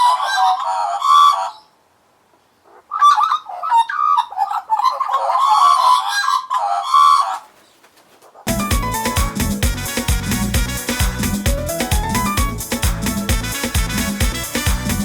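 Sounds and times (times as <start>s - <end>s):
music: 8.5s - 15.0s.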